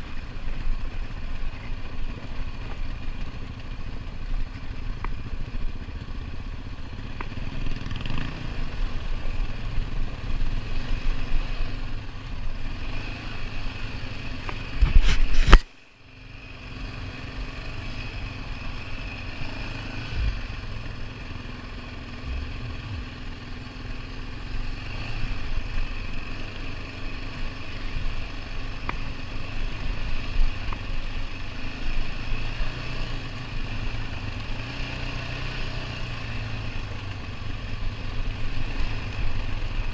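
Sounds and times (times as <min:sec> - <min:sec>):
atv engine running: 0:00.0 - 0:39.9.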